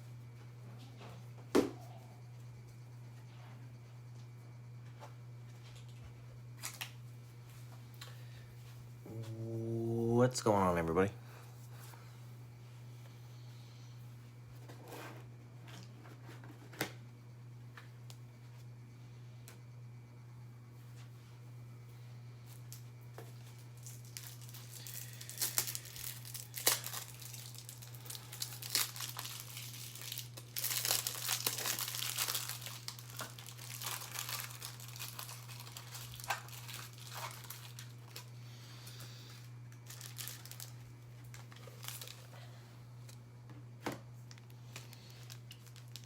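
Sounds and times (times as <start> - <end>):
low electrical hum: 0.0 - 46.0
packaging crinkling and tearing: 23.4 - 38.3, 39.8 - 42.3, 44.3 - 46.0.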